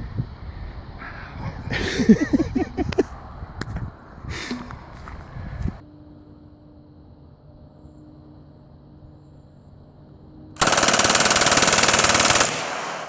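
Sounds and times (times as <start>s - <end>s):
submachine gun firing full auto: 10.6s - 13.0s.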